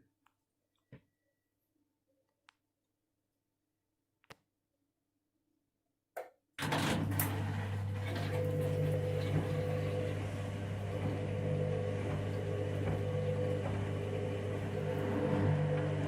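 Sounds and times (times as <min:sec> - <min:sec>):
drain pump humming: 0:06.6 - 0:16.0.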